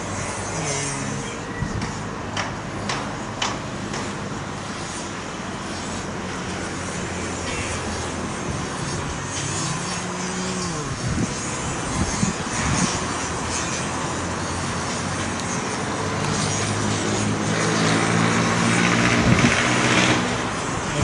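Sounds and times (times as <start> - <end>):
distant road traffic: 0.0 - 21.0
vehicle engine hum: 0.0 - 21.0
wind on microphone: 8.2 - 21.0.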